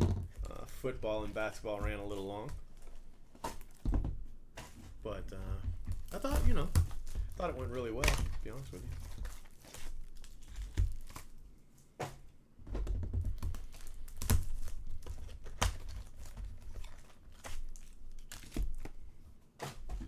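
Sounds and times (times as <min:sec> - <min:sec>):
sharp plastic crackles: 0:00.0 - 0:20.0
wrapping crinkling and tearing: 0:00.4 - 0:03.8, 0:05.0 - 0:11.4, 0:13.2 - 0:19.1.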